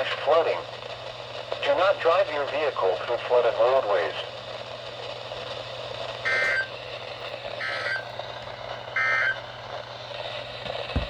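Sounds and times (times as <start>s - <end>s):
two-tone digital data bursts: 6.3s - 6.7s, 7.6s - 8.0s, 9.0s - 9.4s.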